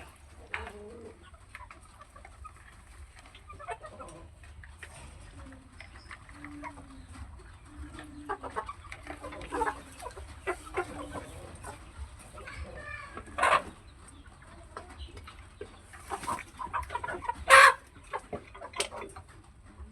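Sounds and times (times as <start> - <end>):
chickens clucking: 0.0 - 19.9
loud chicken calls: 17.2 - 17.8.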